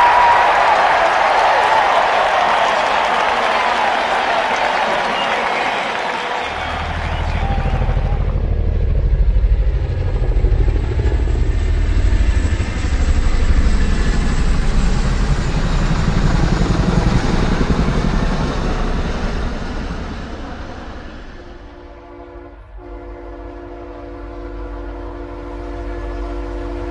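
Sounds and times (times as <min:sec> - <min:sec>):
heavy vehicle rumbling: 0:06.5 - 0:12.9.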